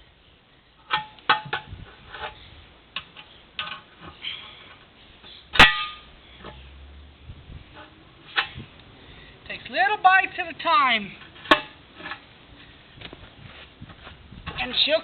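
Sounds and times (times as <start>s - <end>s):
tire irons clinking on wheel rim: 5.5s - 6.7s, 10.3s - 12.3s.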